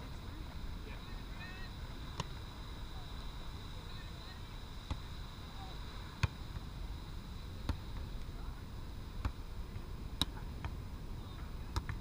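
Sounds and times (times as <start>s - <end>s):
hands slapping a volleyball: 10.2s - 10.8s, 11.7s - 12.0s.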